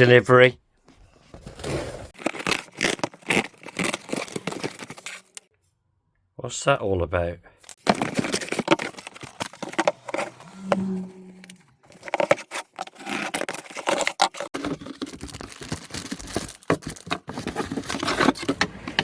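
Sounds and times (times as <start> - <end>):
packaging tearing and crinkling: 2.1 - 5.5, 7.7 - 10.5, 11.9 - 18.6
clicks and knocks of handled objects: 7.7 - 10.4.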